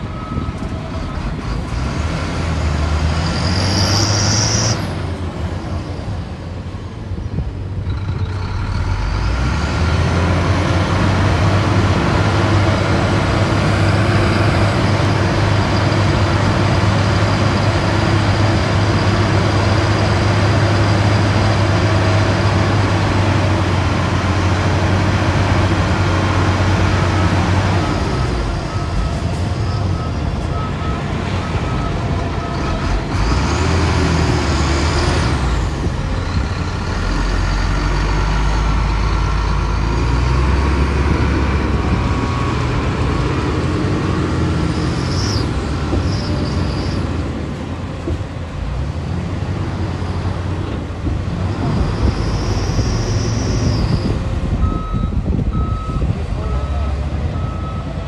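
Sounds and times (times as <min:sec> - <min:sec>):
reversing alarm beeping: 0:00.0 - 0:01.3, 0:27.6 - 0:32.8, 0:51.8 - 0:58.0
heavy machinery diesel engines: 0:00.0 - 0:58.0
high squeals: 0:03.0 - 0:05.0, 0:44.1 - 0:47.2, 0:51.5 - 0:54.3.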